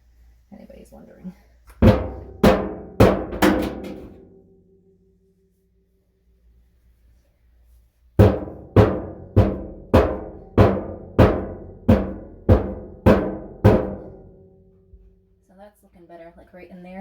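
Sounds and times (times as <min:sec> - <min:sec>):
rock pounding tin bathtub: 0:01.8 - 0:04.2, 0:08.2 - 0:14.2.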